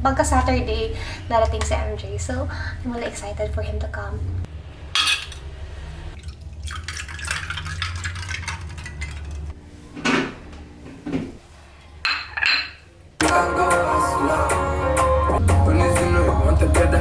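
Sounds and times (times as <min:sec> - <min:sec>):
low steady hum: 0:00.0 - 0:13.2
cutlery and dishes clinking: 0:05.0 - 0:05.5.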